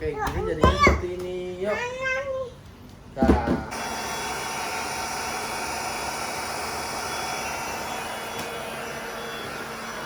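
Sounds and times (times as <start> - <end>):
electric air pump running: 3.6 - 10.0.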